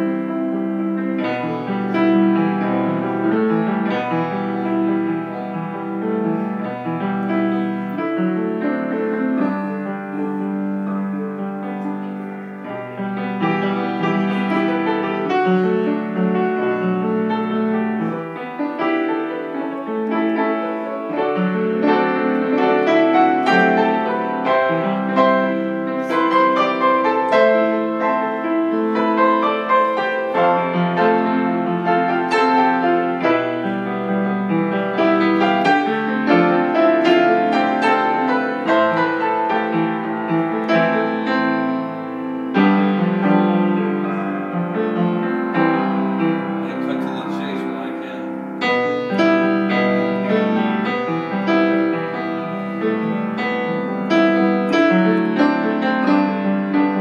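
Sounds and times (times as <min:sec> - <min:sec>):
solo piano melody: 0:00.0 - 0:57.0.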